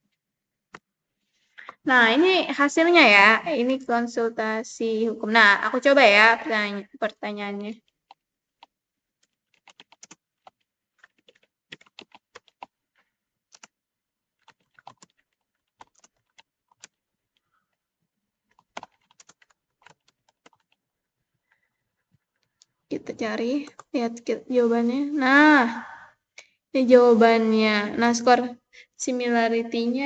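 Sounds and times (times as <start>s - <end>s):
typing on computer keyboard: 7.8s - 13.8s, 14.4s - 17.0s, 18.5s - 20.8s, 23.6s - 23.9s.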